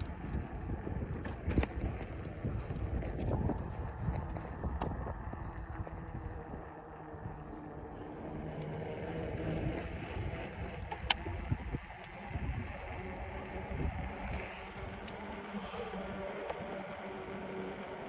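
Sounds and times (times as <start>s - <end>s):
bicycle tyre noise: 0.0s - 18.0s
wind rumbling on microphone: 0.0s - 18.0s.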